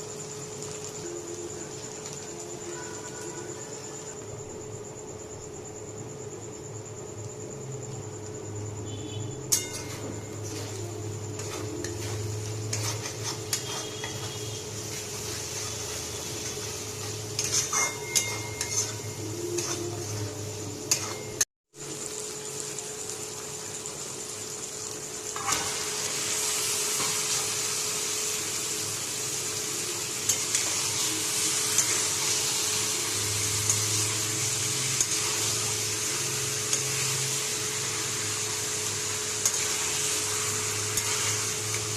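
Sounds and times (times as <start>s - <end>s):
frying sizzle: 0.0s - 41.9s
metal spoon scraping a pot: 9.5s - 21.3s.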